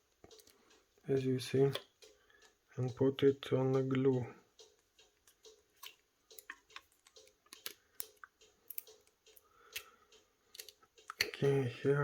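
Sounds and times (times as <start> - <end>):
small clicks of tools and plastic: 0.2 - 0.8, 4.6 - 11.4.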